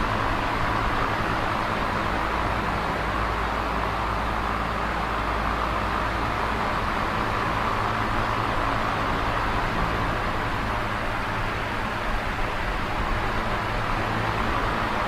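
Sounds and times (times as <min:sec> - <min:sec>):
box fan running: 0:00.0 - 0:15.0.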